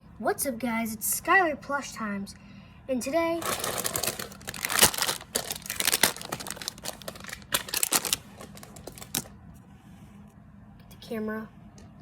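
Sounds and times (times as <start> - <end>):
plastic crinkling: 3.4 - 9.3.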